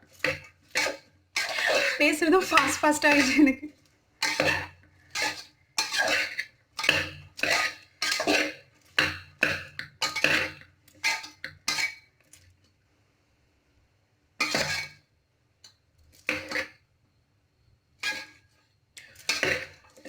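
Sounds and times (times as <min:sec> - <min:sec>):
utensil scraping metal pot: 0:00.0 - 0:03.6, 0:04.2 - 0:12.1, 0:14.4 - 0:15.0, 0:18.0 - 0:20.0.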